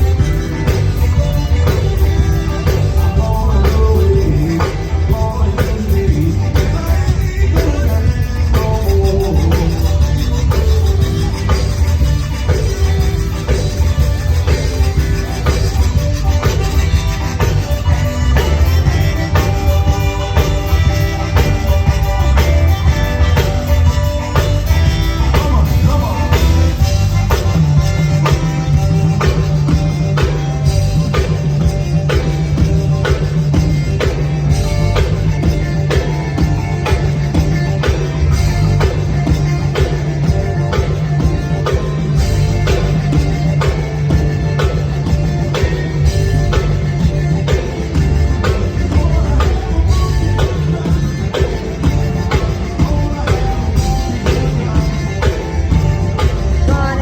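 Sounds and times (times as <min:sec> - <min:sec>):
live band playing: 0:00.0 - 0:57.0.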